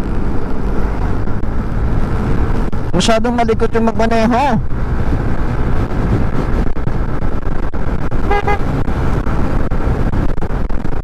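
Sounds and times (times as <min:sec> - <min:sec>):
wind and road noise: 0:00.0 - 0:11.0
scooter horn toot: 0:08.3 - 0:08.7.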